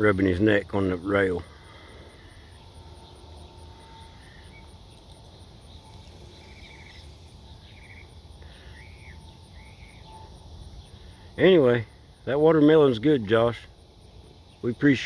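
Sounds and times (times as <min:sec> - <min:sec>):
insect chirping: 0:00.0 - 0:15.0
bird calls: 0:01.3 - 0:11.8.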